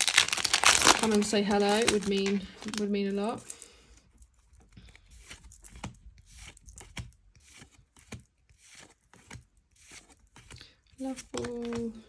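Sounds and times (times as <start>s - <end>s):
foil wrapper crinkling and tearing: 0.0s - 3.7s.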